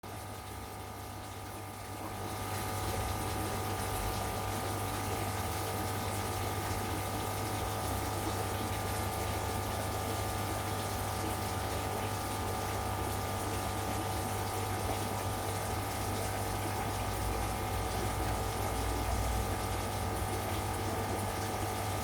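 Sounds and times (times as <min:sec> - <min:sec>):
aquarium filter water rushing: 0:00.0 - 0:22.0.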